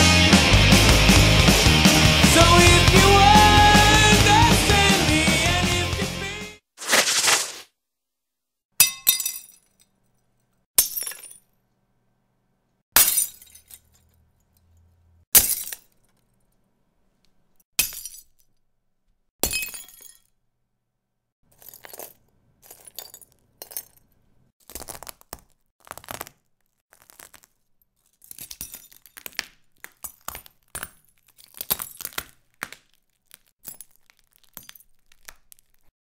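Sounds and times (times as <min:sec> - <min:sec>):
glass smashing: 0:08.8 - 0:09.7, 0:10.8 - 0:11.4, 0:13.0 - 0:14.1, 0:15.3 - 0:16.0, 0:17.8 - 0:18.4, 0:19.4 - 0:20.3, 0:21.5 - 0:24.0, 0:28.2 - 0:32.3, 0:33.3 - 0:35.8.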